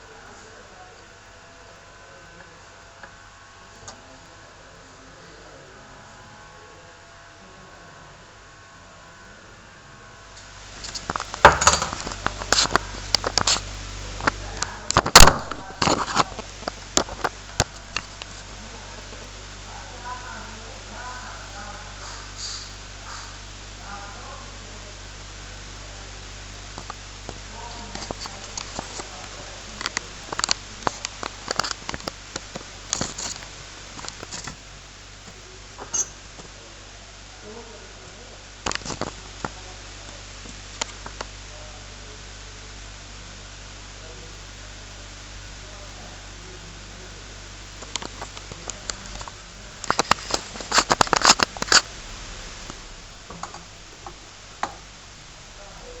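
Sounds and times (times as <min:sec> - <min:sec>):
background hiss: 0:00.0 - 0:56.0
low electrical hum: 0:00.0 - 0:56.0
small hand tools clicking and scraping: 0:10.4 - 0:18.5, 0:27.7 - 0:34.6, 0:35.2 - 0:36.2, 0:47.8 - 0:54.8.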